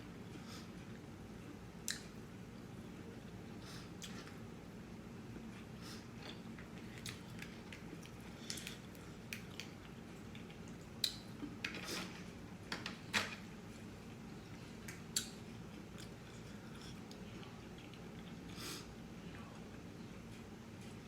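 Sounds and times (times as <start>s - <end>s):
person chewing with mouth smacks: 15.1s - 18.6s.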